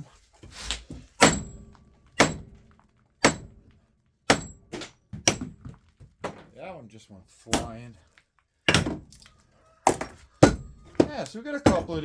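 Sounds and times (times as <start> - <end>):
hammer striking metal transformer: 1.2 - 2.6, 3.2 - 3.7, 4.3 - 5.6.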